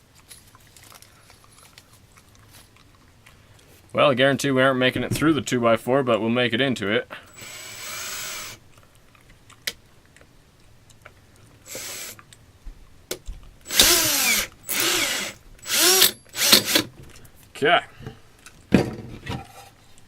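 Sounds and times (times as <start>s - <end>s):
power drill bursts: 7.3s - 8.6s, 11.7s - 12.2s, 13.7s - 16.9s.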